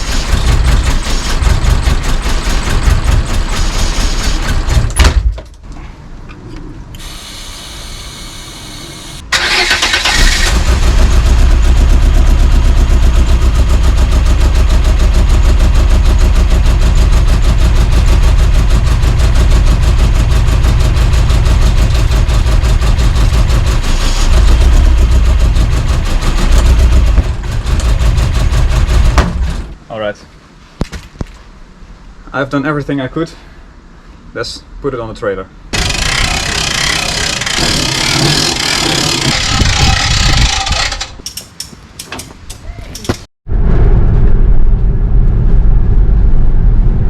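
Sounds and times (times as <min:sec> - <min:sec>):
car engine running: 0:00.0 - 0:05.0, 0:09.0 - 0:29.8, 0:35.8 - 0:40.8
engine cranking: 0:00.0 - 0:05.0, 0:09.3 - 0:12.2, 0:35.8 - 0:43.3.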